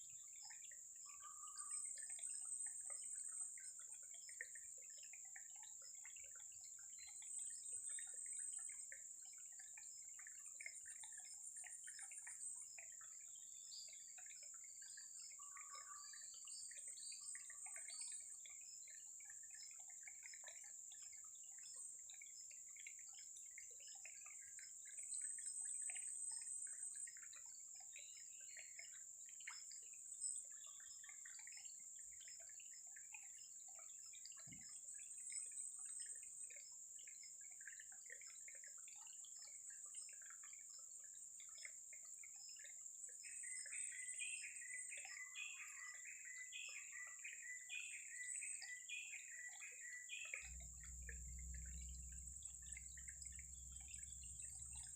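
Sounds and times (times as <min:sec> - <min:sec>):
water dripping and trickling: 0:00.0 - 0:54.9
steady high-pitched hum: 0:50.1 - 0:54.9.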